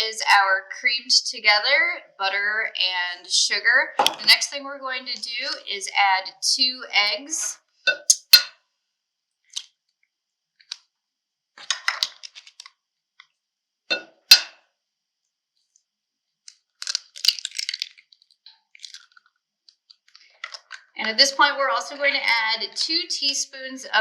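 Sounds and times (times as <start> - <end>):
eggs knocking on bowl edge: 4.0 - 4.4
eggshells crackling: 16.5 - 19.4.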